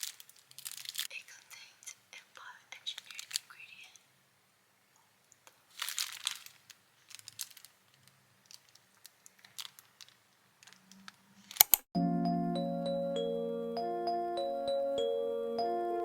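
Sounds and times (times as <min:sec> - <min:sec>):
small objects rustling and clicking: 0:00.0 - 0:01.1, 0:02.9 - 0:03.6, 0:05.4 - 0:11.9
chiming music with mallet notes: 0:12.0 - 0:16.0.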